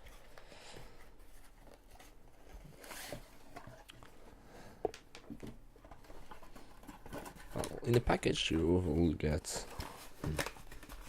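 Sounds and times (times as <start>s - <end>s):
packaging rustling: 5.9s - 11.0s.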